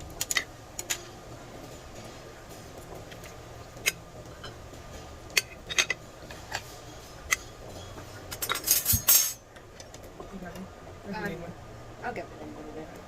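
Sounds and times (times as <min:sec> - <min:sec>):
low background hum: 0:00.0 - 0:13.0
utensils clinking on dishes: 0:05.3 - 0:09.9.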